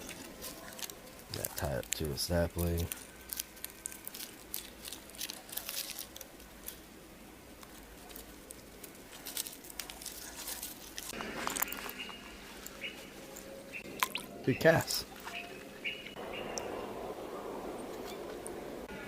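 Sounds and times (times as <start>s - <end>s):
handling clicks and rustling: 0.0s - 6.8s, 7.6s - 13.5s.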